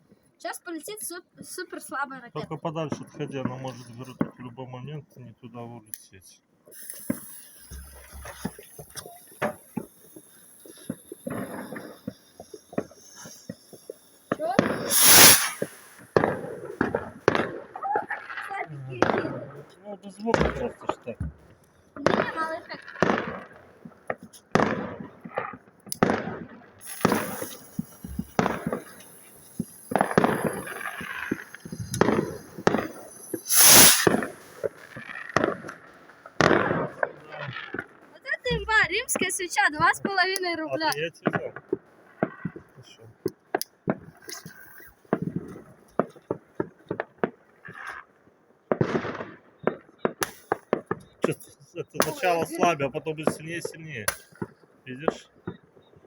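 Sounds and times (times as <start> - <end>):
firecrackers popping: 0.0 - 56.0
firework rocket hissing: 6.7 - 19.5, 20.3 - 41.4, 42.2 - 46.4, 48.7 - 55.3.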